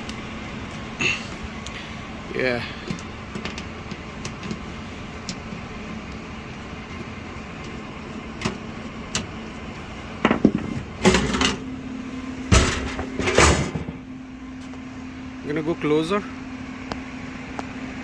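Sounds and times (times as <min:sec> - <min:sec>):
steady hum: 0:00.0 - 0:18.0
steady running noise: 0:00.0 - 0:18.0
metal clatters and knocks: 0:10.2 - 0:11.6, 0:12.5 - 0:14.1.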